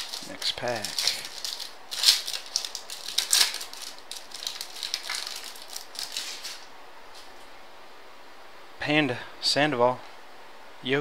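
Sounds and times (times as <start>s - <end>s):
plastic wrapper crinkling: 0.0s - 6.7s.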